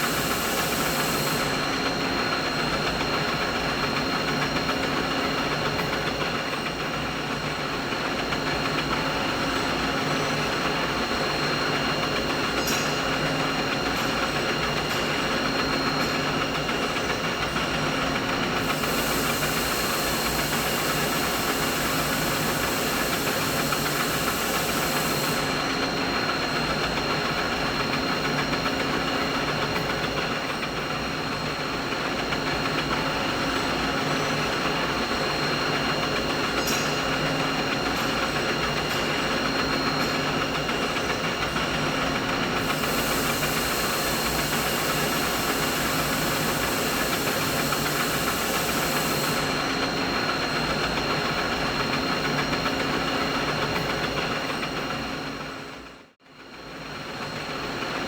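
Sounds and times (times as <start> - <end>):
high hiss: 0.0 - 1.6, 18.6 - 25.6, 42.6 - 49.5
machinery drone with whining: 18.5 - 28.0, 33.2 - 52.6.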